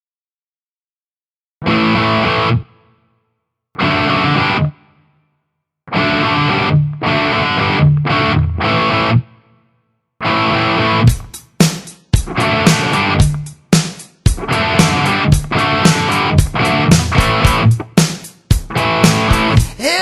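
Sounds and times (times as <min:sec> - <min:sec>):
overdriven electric guitar chords: 0:01.6 - 0:03.0, 0:03.8 - 0:05.1, 0:05.9 - 0:09.5, 0:10.2 - 0:11.3, 0:12.3 - 0:13.5, 0:14.3 - 0:18.0, 0:18.6 - 0:19.7.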